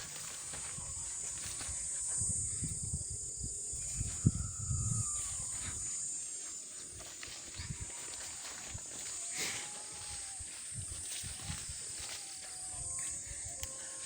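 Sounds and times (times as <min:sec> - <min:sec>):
wind rumble on microphone: 0:00.0 - 0:06.1, 0:10.0 - 0:14.0
high-pitched insect chorus: 0:00.0 - 0:14.0.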